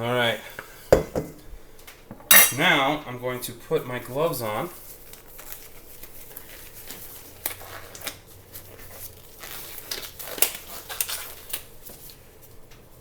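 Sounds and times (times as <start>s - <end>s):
gloves rustling and crinkling: 4.1s - 13.0s.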